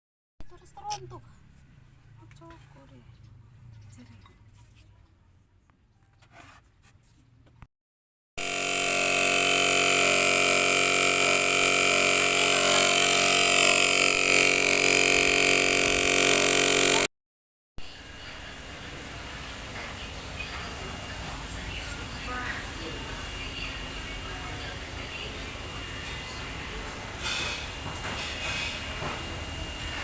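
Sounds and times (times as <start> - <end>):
refrigerator compressor humming: 8.4 - 17.0, 17.8 - 30.0.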